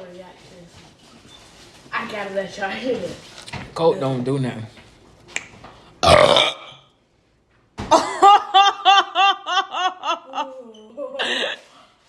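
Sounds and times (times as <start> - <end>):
person burping: 6.0 - 7.0
high-pitched laughter: 8.0 - 11.5.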